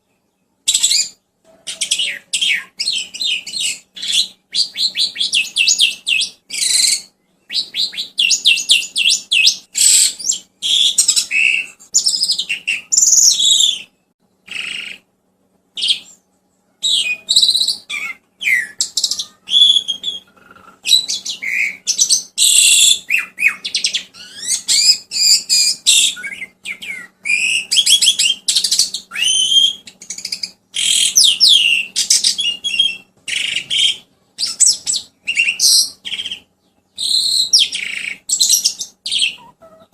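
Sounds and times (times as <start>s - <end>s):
songbird singing: 0.0s - 15.1s, 15.7s - 39.9s.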